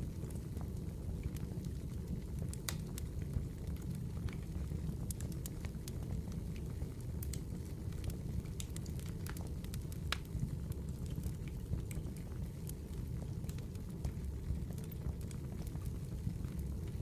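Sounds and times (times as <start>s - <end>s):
wood fire crackling and popping: 0.0s - 17.0s.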